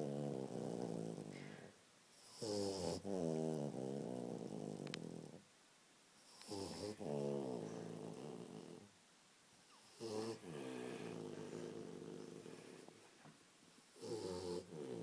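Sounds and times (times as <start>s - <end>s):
person snoring: 10.0s - 12.8s.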